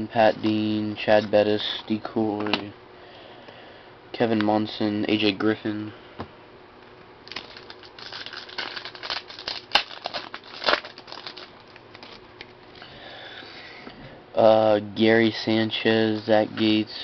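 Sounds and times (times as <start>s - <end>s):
plastic wrapper crinkling and tearing: 7.2s - 12.5s.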